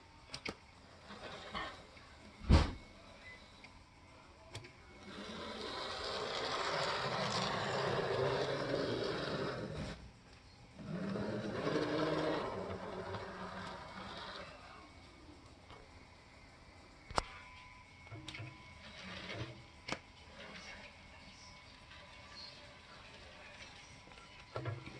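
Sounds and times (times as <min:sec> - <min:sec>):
model train whirring: 0:00.0 - 0:02.3, 0:04.9 - 0:10.1, 0:10.7 - 0:15.4, 0:18.1 - 0:24.9.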